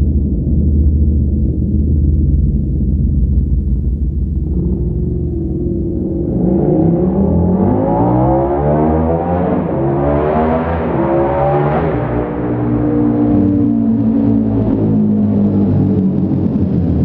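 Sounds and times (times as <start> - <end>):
motorcycle engine accelerating: 4.2 - 17.0.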